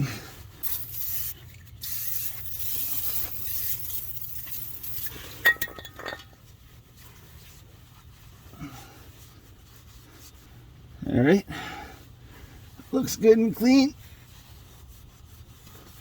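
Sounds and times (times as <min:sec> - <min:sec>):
hissing and rubbing cleaning: 0:00.6 - 0:05.4
metallic clink with ring: 0:01.9 - 0:06.3.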